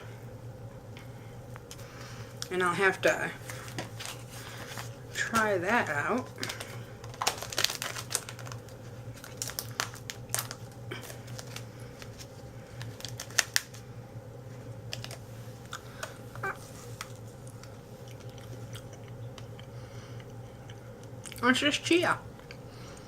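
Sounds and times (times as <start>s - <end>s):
packet crinkling and clicking: 3.4s - 5.5s, 6.2s - 13.8s, 14.9s - 19.7s.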